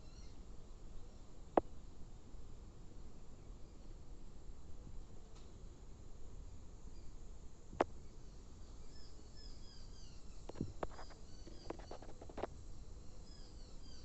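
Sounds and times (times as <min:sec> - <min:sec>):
small birds chirping: 0:00.0 - 0:00.4, 0:07.8 - 0:14.0
low background hiss: 0:00.0 - 0:14.0.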